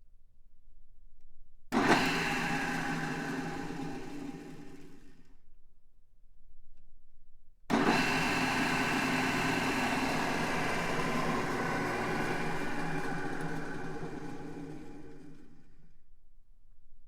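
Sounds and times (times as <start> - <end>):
drill press motor whirring: 1.8 - 5.2, 7.7 - 15.9.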